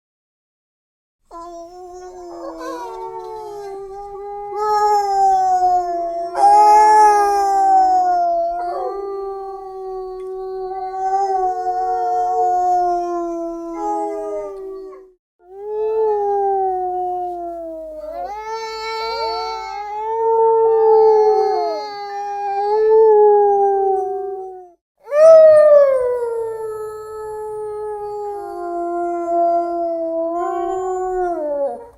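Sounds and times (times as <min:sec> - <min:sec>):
wolf pups howling: 0:02.0 - 0:15.1, 0:16.1 - 0:26.1.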